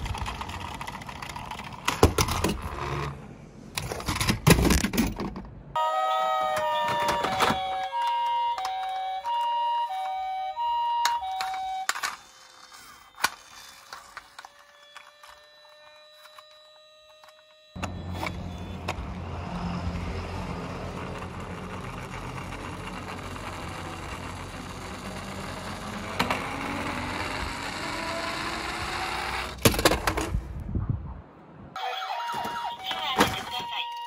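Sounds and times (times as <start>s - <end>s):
rattling rumble with low hum: 0.0s - 5.8s, 17.8s - 31.4s
toy two-tone siren: 5.8s - 19.1s, 31.8s - 34.0s.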